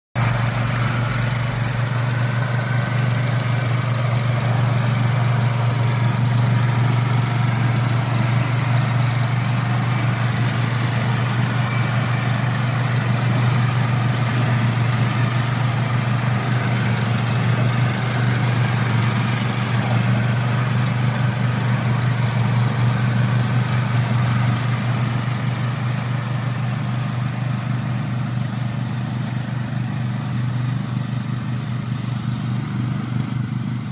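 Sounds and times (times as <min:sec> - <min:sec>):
mower engine humming: 0:00.2 - 0:33.9.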